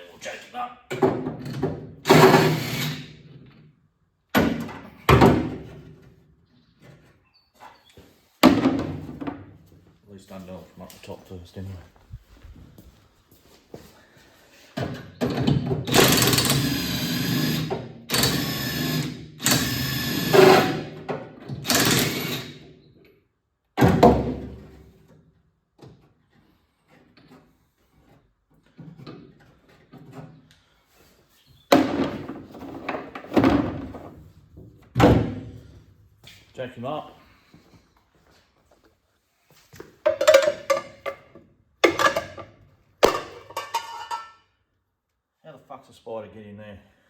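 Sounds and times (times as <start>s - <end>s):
power tool bursts: 2.1s - 3.1s, 15.9s - 20.9s, 21.6s - 22.6s.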